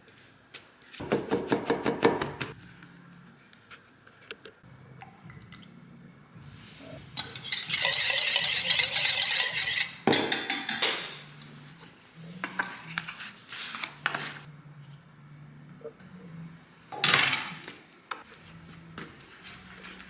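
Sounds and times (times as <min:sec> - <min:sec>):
utensil scraping a bowl: 0:06.7 - 0:11.6.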